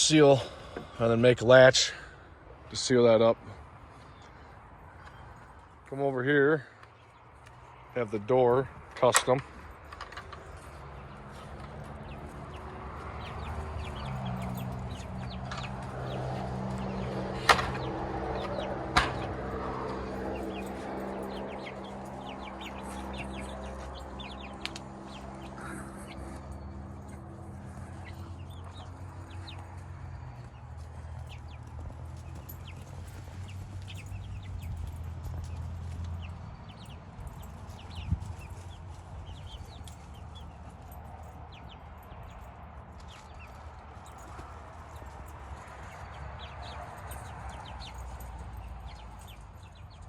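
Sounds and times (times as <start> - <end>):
chicks peeping and clucking: 8.8 - 42.4, 43.0 - 50.0
sharp knocks: 17.3 - 19.9.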